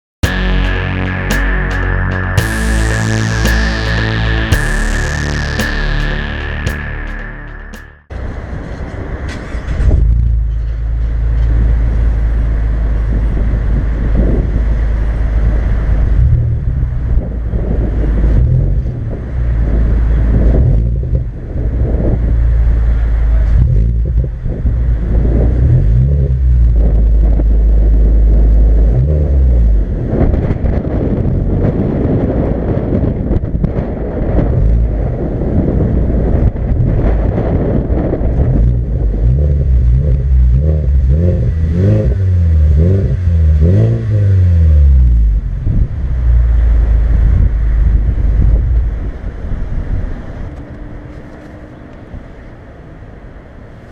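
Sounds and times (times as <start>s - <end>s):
car engine exhaust revving: 0.2s - 8.3s, 11.5s - 31.9s, 34.6s - 49.1s
wind rumble on microphone: 8.1s - 44.2s, 44.8s - 53.9s.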